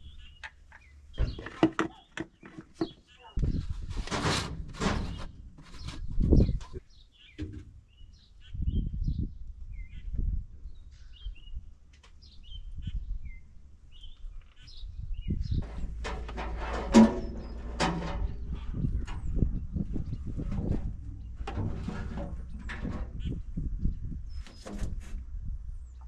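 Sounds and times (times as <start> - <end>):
small birds chirping: 0.0 - 4.0, 5.0 - 16.0
low rumbles: 14.7 - 26.0
handling clatter: 15.6 - 23.5.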